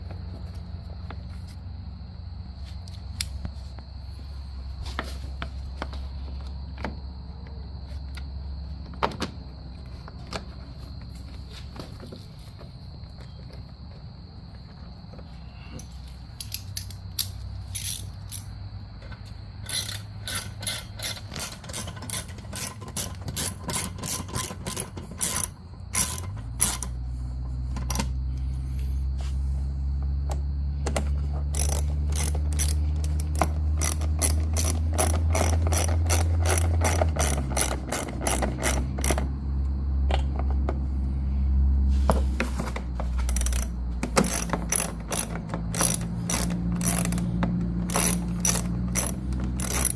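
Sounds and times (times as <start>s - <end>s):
low motor hum: 0.0s - 49.9s
ratchet wrench clicking: 16.4s - 18.5s, 19.6s - 27.0s, 31.5s - 39.3s, 43.1s - 49.9s.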